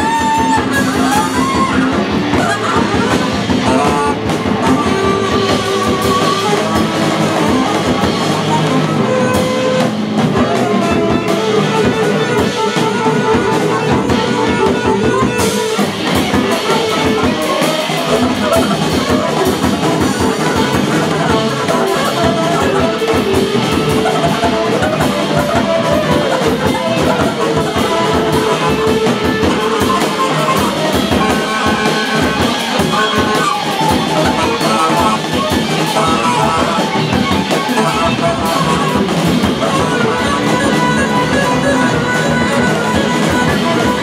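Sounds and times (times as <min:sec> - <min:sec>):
drum kit: 0:00.0 - 0:44.0
electric guitar: 0:00.0 - 0:44.0.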